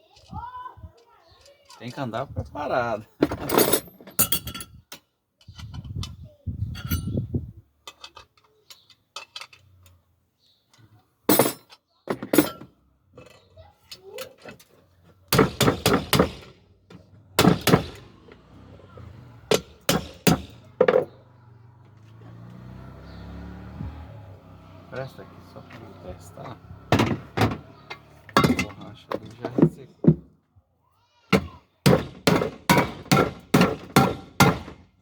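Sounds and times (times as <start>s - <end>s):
metal cookware clinking: 3.6s - 4.7s, 27.9s - 28.9s.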